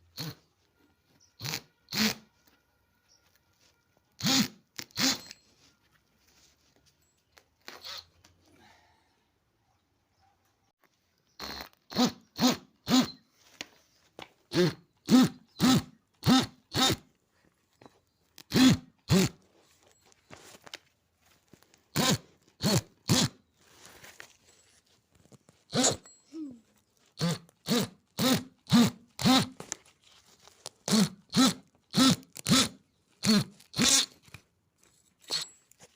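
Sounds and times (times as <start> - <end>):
dog barking: 9.6 - 10.6.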